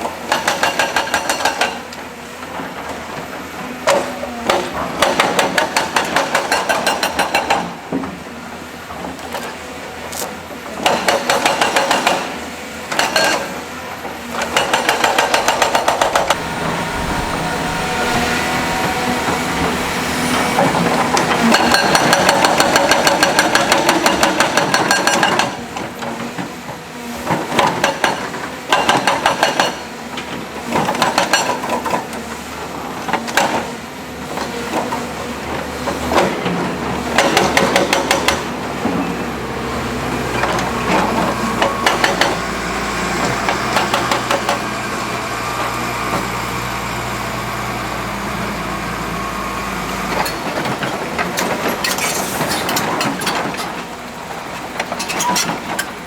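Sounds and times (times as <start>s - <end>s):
rock breaker hammering: 14.4s - 25.6s
diesel engine running: 15.4s - 24.2s, 35.3s - 56.0s.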